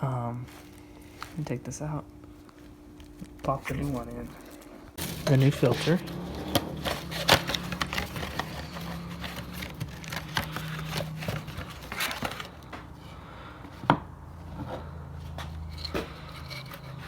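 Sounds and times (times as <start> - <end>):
hands handling oil filter: 3.2 - 13.0.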